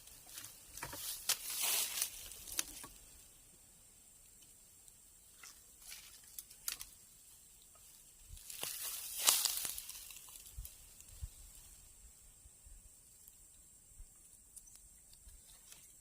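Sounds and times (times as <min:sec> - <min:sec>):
rustling and crackling: 0:00.0 - 0:03.2, 0:05.3 - 0:11.9.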